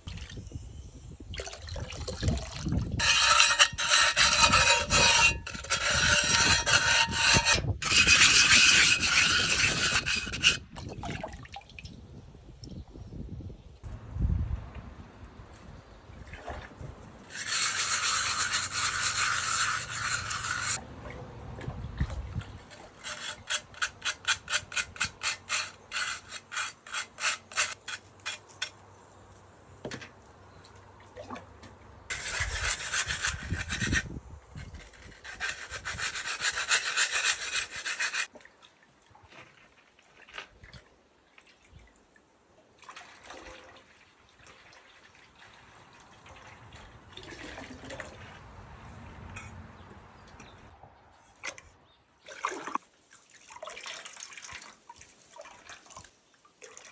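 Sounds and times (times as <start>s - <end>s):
sandpaper rubbing pottery: 3.0s - 10.6s, 17.3s - 20.8s, 23.0s - 28.7s, 32.1s - 38.3s.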